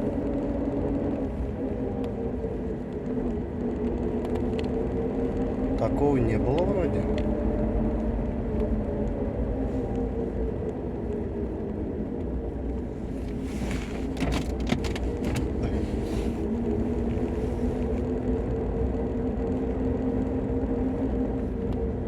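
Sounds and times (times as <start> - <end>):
road and drivetrain rumble: 0.0 - 22.0.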